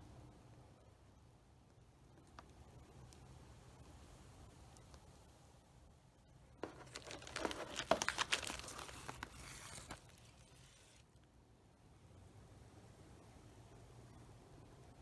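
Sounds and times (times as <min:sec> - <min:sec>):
plastic packaging crinkling: 0:06.6 - 0:11.0.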